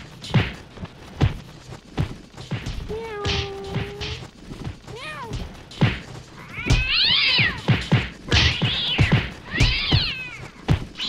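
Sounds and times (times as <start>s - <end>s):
low thumps: 0.0s - 11.0s
yowling cries: 6.4s - 7.7s, 8.5s - 10.6s.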